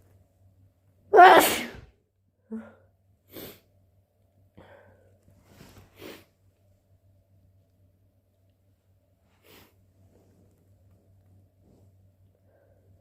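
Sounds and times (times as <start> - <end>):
person sneezing: 1.2 - 1.9.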